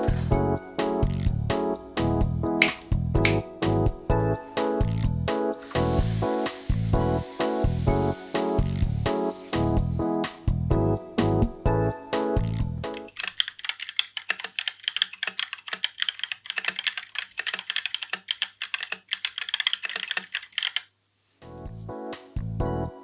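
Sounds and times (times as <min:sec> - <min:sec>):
mechanical keyboard key clicks: 0:02.6 - 0:03.4
bossa nova backing music: 0:05.0 - 0:12.9.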